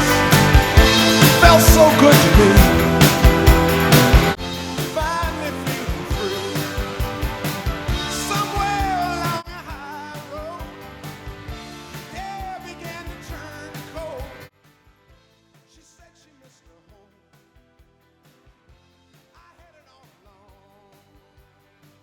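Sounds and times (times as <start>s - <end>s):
rock song with singing: 0.0s - 14.5s.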